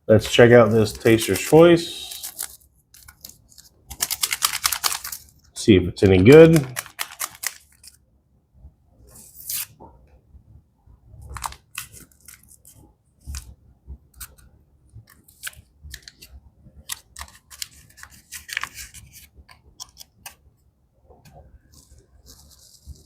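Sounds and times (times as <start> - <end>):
coffee packet crinkling: 0.7 - 5.4, 6.1 - 8.0.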